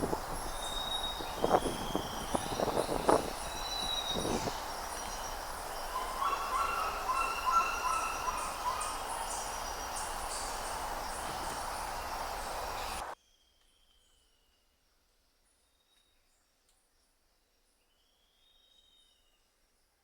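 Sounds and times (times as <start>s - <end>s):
birds chirping: 0.0s - 13.2s
steady background hiss: 0.0s - 13.2s.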